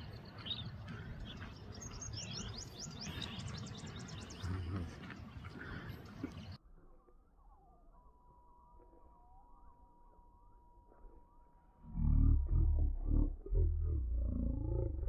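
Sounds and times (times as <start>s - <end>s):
songbird chirping trill: 0.0s - 15.0s
low rumble: 11.2s - 15.0s.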